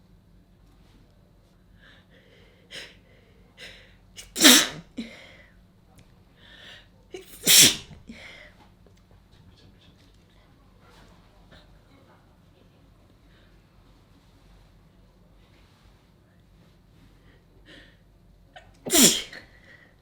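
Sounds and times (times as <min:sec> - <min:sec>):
person sneezing: 0:03.6 - 0:05.3, 0:07.2 - 0:08.4, 0:18.6 - 0:19.8.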